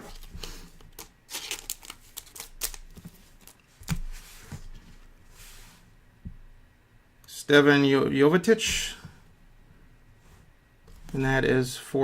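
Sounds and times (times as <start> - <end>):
plastic packaging crinkling: 0.1 - 4.1.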